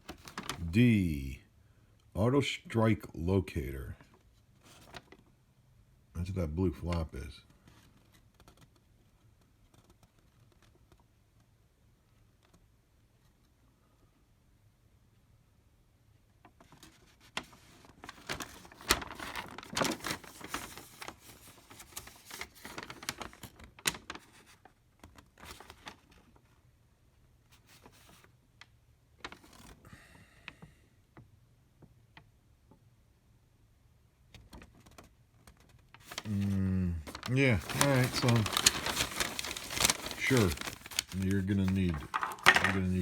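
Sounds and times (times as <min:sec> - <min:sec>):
packaging rustling: 0:00.0 - 0:00.8, 0:17.3 - 0:26.2, 0:35.6 - 0:43.0
clicks and rattles of hardware: 0:42.0 - 0:42.9.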